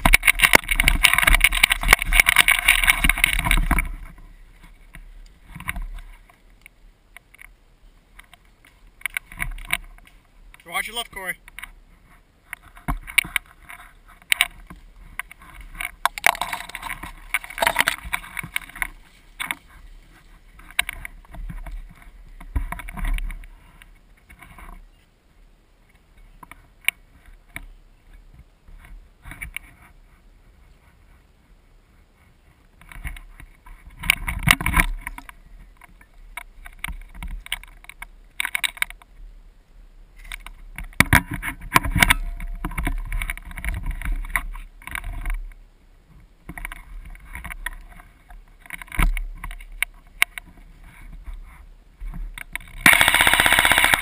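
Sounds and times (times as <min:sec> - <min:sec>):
camera handling rustling: 0:00.0 - 0:04.2, 0:12.5 - 0:19.7
clicks and knocks: 0:14.2 - 0:19.6.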